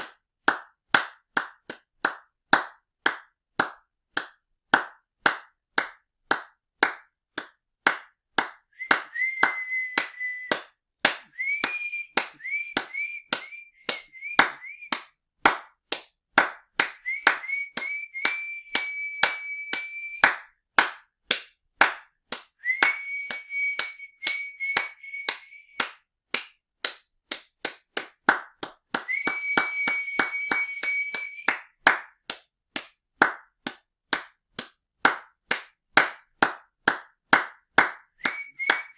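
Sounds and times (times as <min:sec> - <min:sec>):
hand clapping: 0:00.0 - 0:38.9
high whistling: 0:08.8 - 0:10.6, 0:11.3 - 0:15.0, 0:17.0 - 0:20.4, 0:22.6 - 0:25.8, 0:29.1 - 0:31.6, 0:38.2 - 0:38.9.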